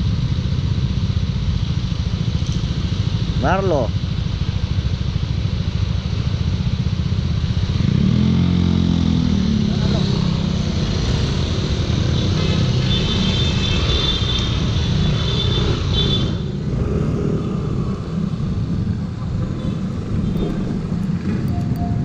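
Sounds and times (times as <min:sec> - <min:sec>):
motor scooter engine and wind: 0:04.5 - 0:22.0.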